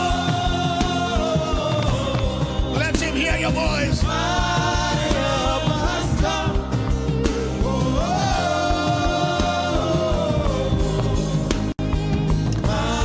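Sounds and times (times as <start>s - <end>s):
instrumental backing: 0.0s - 13.0s.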